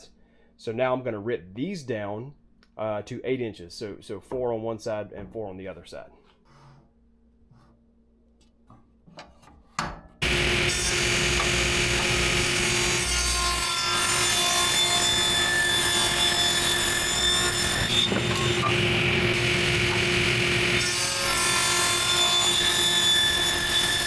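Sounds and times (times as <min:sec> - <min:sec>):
power saw ripping a board: 0:10.2 - 0:24.0.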